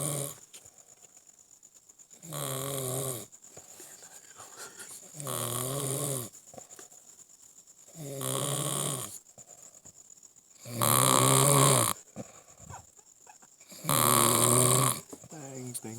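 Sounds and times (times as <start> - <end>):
quiet breathing: 3.2 - 8.0, 9.0 - 10.8, 11.9 - 15.9
person snoring: 10.6 - 12.0, 13.7 - 15.1.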